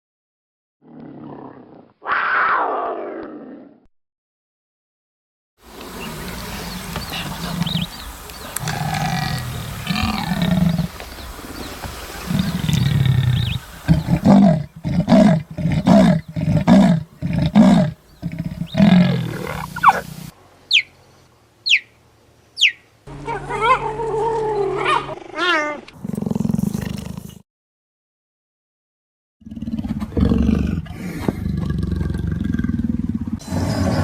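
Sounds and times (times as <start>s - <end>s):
big cat roaring: 8.6s - 10.9s, 12.3s - 20.1s, 29.4s - 34.0s.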